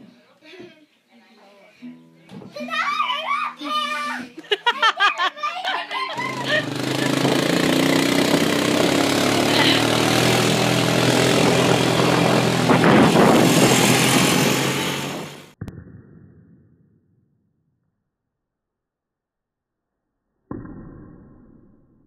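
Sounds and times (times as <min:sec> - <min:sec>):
heavy rush of noise: 0:06.2 - 0:15.6
vehicle engine running: 0:06.2 - 0:15.6.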